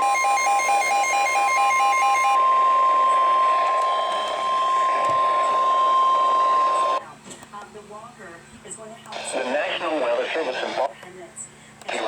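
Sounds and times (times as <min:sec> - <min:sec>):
rapid beeping: 0:00.0 - 0:02.4
high warning alarm tone: 0:00.0 - 0:03.4.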